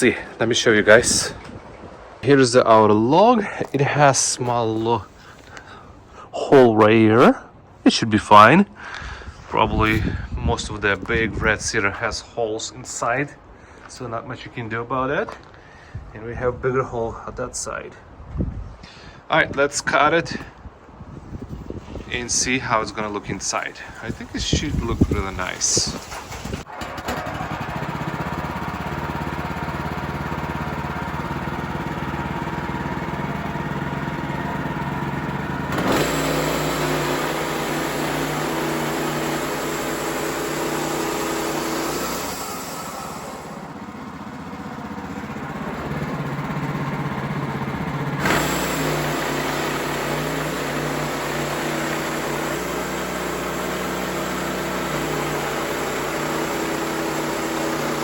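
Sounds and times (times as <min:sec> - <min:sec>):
sawmill engine cutting log: 0:00.0 - 0:01.6, 0:22.2 - 0:58.0.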